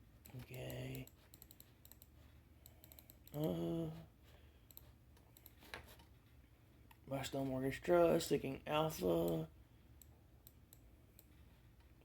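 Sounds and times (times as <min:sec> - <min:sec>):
keyboard and mouse clicks: 0:00.2 - 0:03.6, 0:04.7 - 0:06.1
person murmuring: 0:03.3 - 0:04.2.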